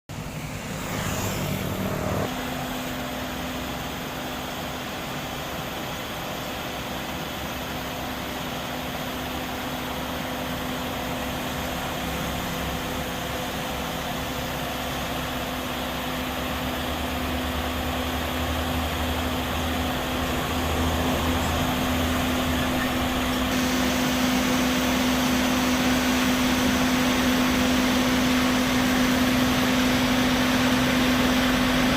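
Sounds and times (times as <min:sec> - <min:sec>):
diesel engine droning: 0:00.1 - 0:05.1, 0:10.2 - 0:31.9.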